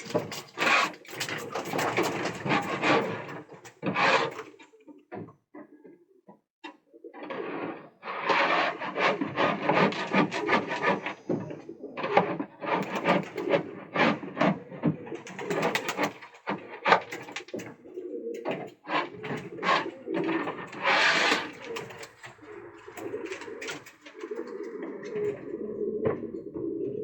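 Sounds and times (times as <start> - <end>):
pigeons cooing: 8.8 - 27.0.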